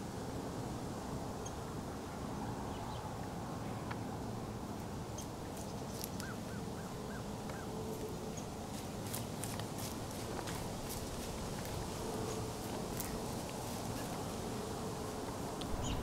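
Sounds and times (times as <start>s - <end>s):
bird chirping: 15.7s - 16.0s.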